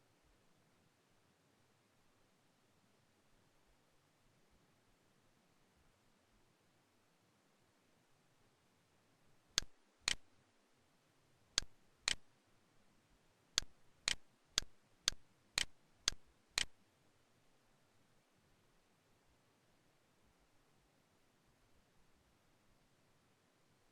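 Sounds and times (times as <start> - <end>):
computer mouse clicks: 9.6 - 10.2, 11.6 - 12.2, 13.6 - 16.8.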